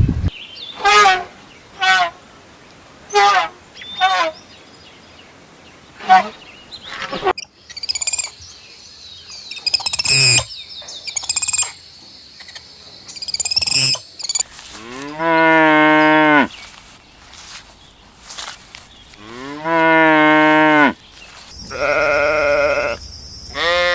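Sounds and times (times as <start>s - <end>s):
high chirping calls: 6.1s - 11.8s, 12.4s - 14.6s
cow mooing: 14.8s - 16.5s, 19.2s - 21.0s, 21.7s - 23.0s.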